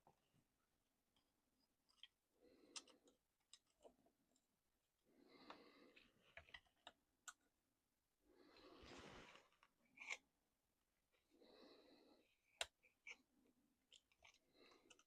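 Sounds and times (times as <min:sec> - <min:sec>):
faint clicks of tools and parts: 0:01.1 - 0:04.5, 0:13.9 - 0:15.0.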